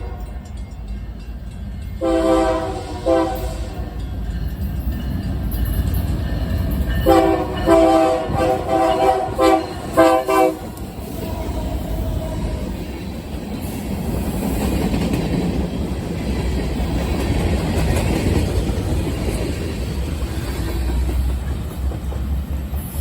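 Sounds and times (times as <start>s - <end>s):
locomotive air horn blasts: 0.0s - 0.4s, 2.0s - 4.0s, 7.0s - 12.5s
low rumble of moving train: 0.0s - 23.0s.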